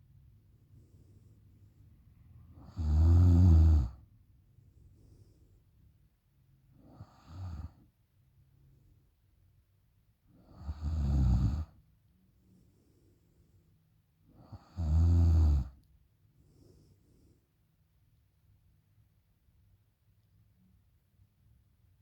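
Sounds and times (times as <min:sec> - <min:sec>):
woman snoring: 0:02.6 - 0:04.0, 0:06.9 - 0:07.8, 0:10.5 - 0:11.8, 0:14.4 - 0:15.8.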